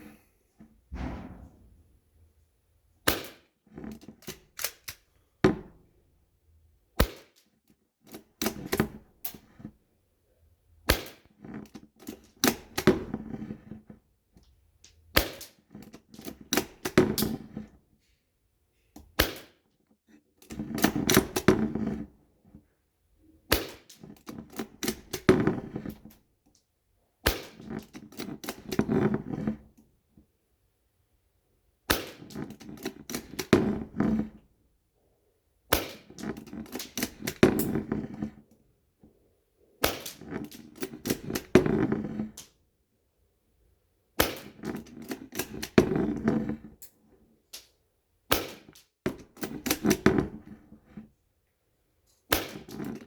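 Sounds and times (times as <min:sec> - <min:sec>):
air rifle shot crack: 0:01.0 - 0:01.6
rifle clicks and clatter: 0:03.1 - 0:05.1, 0:35.8 - 0:37.7, 0:39.9 - 0:41.6.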